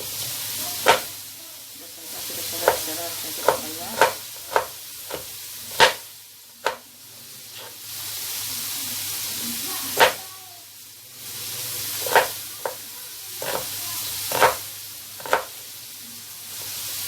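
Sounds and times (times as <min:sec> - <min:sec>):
onions sizzling in a pan: 0:00.0 - 0:17.0
utensil knocking against pan: 0:00.8 - 0:01.2, 0:02.4 - 0:06.9, 0:09.9 - 0:10.2, 0:12.0 - 0:12.8, 0:13.4 - 0:15.6.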